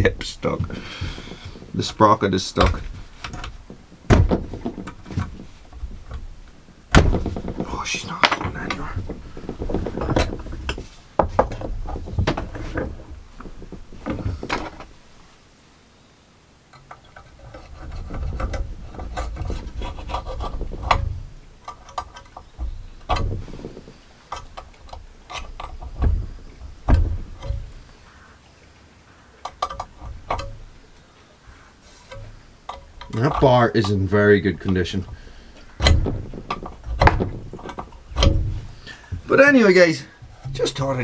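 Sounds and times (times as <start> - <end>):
tools scraping chainsaw bar: 0.0 - 15.1, 29.4 - 39.3.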